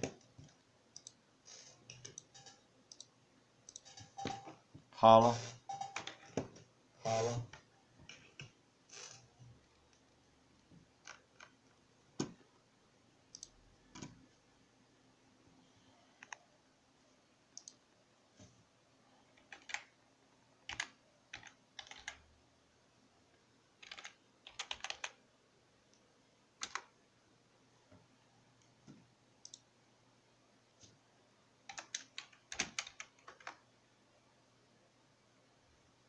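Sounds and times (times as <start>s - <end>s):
sharp clicks: 13.3s - 14.1s.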